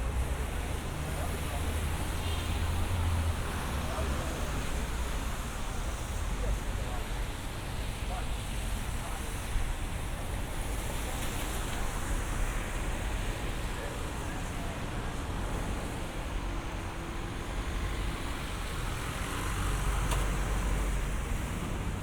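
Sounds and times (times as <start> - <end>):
passing cars rumble and hiss: 0.0 - 22.0.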